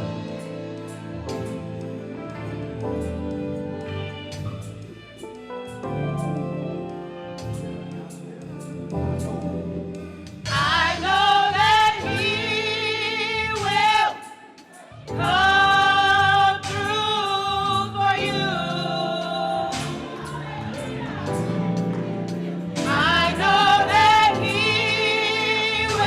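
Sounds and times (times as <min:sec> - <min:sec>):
keyboard: 0:00.0 - 0:26.0
choir singing: 0:06.2 - 0:26.0
drums: 0:10.3 - 0:10.9.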